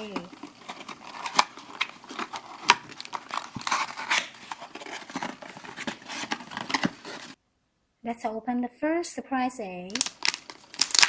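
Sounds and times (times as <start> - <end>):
plastic wrapper crinkling and tearing: 0.0 - 7.4, 9.9 - 11.0.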